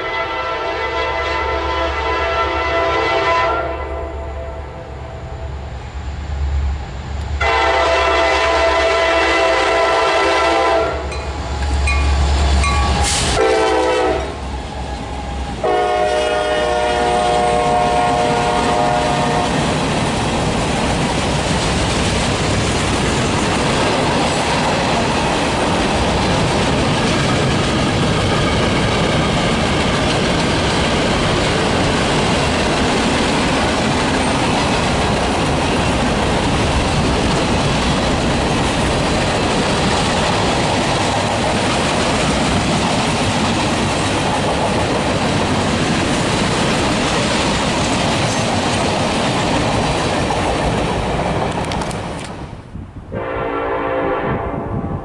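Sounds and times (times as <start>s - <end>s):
locomotive air horn blasts: 0.0s - 4.6s, 7.4s - 11.1s, 13.0s - 14.4s, 15.6s - 19.6s, 53.1s - 55.0s
train rumbling past: 0.0s - 55.0s.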